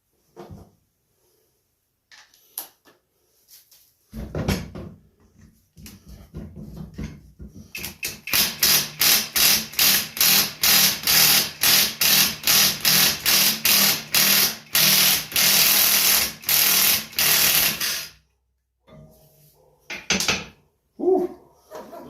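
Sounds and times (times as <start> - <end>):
power tool trigger bursts: 7.8 - 18.2.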